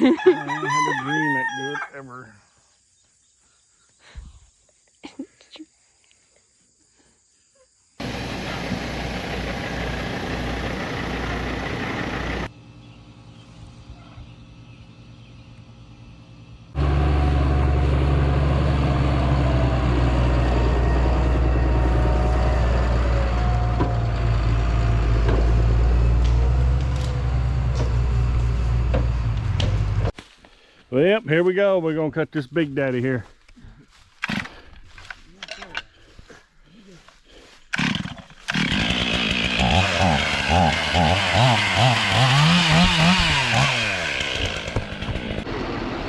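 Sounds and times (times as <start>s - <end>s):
heavy engine running: 8.0s - 30.1s, 38.9s - 46.0s.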